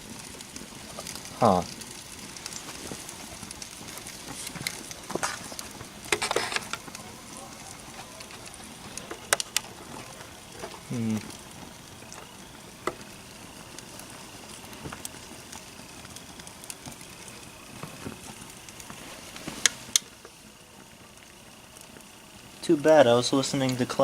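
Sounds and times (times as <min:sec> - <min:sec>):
burning plastic crackling: 0:00.0 - 0:24.0
steady hiss: 0:00.0 - 0:24.0
sharp pops: 0:08.2 - 0:09.8.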